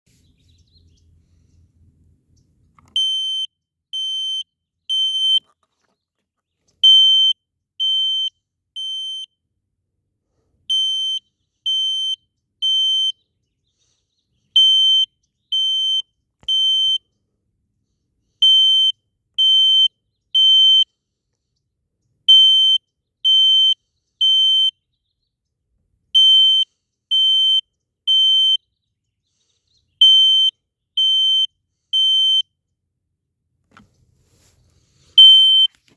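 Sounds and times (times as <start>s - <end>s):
smoke detector beeping: 2.9s - 5.4s, 30.0s - 32.4s, 35.2s - 35.8s.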